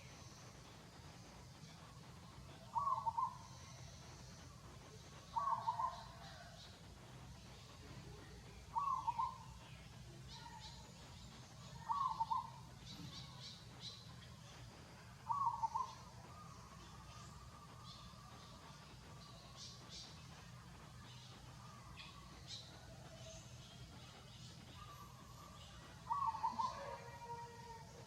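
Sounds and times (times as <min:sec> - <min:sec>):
faint high chirps: 0:00.0 - 0:28.0
bird calling: 0:02.7 - 0:03.6, 0:05.3 - 0:06.4, 0:08.7 - 0:09.4, 0:11.7 - 0:13.4, 0:15.3 - 0:17.4, 0:25.7 - 0:27.8.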